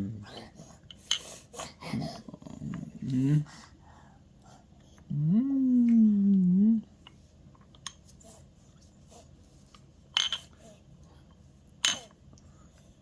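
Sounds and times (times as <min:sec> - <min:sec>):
person humming: 0:02.2 - 0:03.5, 0:05.0 - 0:07.0.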